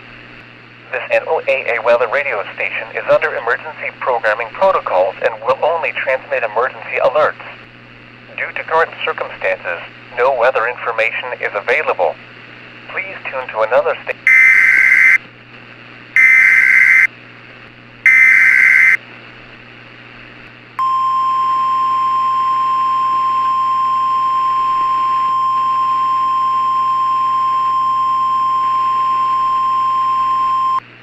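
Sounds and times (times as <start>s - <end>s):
digital data bursts: 14.3s - 15.2s, 16.2s - 17.1s, 18.1s - 19.0s
steady warning alarm tone: 14.3s - 15.2s, 16.2s - 17.1s, 18.1s - 19.0s.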